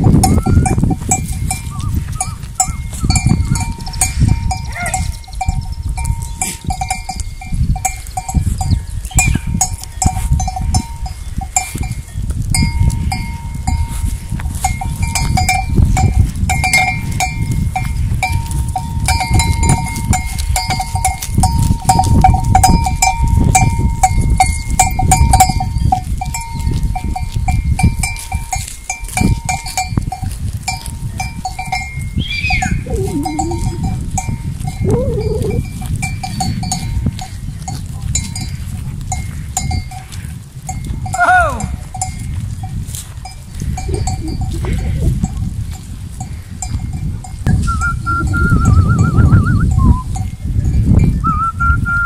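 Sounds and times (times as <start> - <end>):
animal bells clanking and jingling: 0.0 - 51.3
goat bleating: 32.8 - 33.9.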